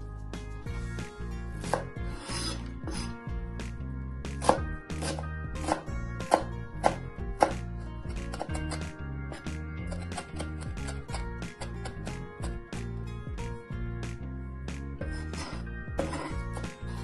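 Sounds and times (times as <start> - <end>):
background music: 0.0 - 17.0
knife chopping on cutting board: 1.6 - 3.2, 4.3 - 12.6, 15.0 - 16.9.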